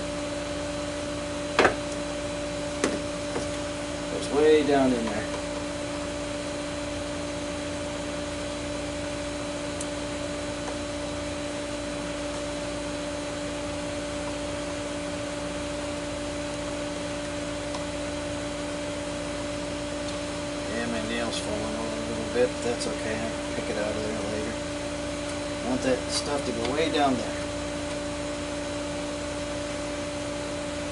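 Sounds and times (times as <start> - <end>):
machine running with hiss and hum: 0.0 - 30.9.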